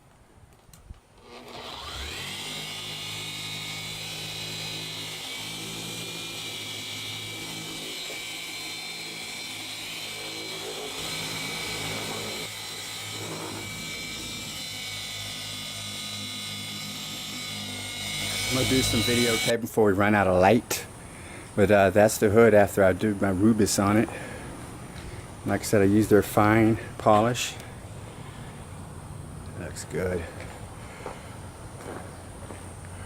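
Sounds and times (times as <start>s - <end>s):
electric car polisher whine: 1.2s - 19.6s.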